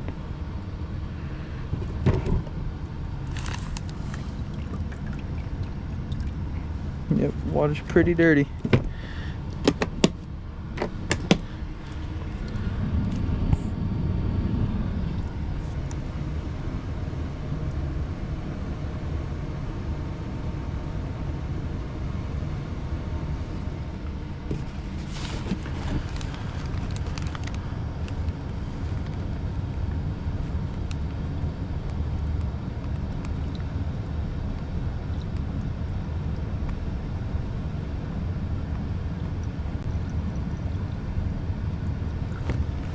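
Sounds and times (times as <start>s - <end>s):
machinery rumbling: 0.0s - 31.7s.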